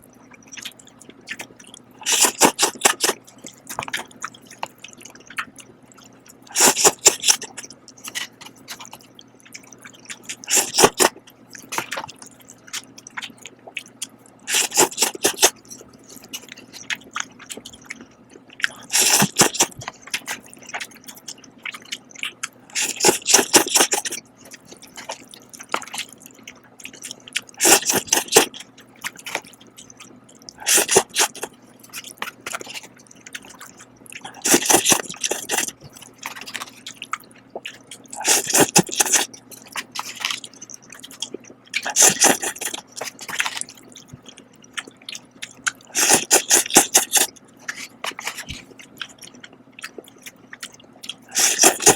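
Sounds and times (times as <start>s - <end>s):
faint steady hum: 0.0s - 51.9s
quiet chewing: 0.0s - 51.9s
wet slurping of noodles: 2.0s - 3.2s, 6.5s - 7.6s, 10.4s - 11.2s, 14.5s - 15.6s, 18.8s - 19.8s, 22.7s - 24.2s, 27.6s - 28.5s, 30.6s - 31.5s, 34.2s - 35.8s, 38.1s - 39.3s, 41.8s - 43.6s, 45.9s - 47.9s, 51.3s - 51.9s.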